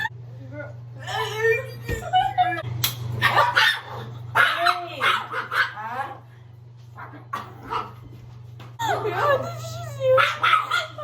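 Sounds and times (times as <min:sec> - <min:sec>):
dog barking: 0:03.2 - 0:06.2, 0:07.0 - 0:08.0, 0:10.2 - 0:11.0.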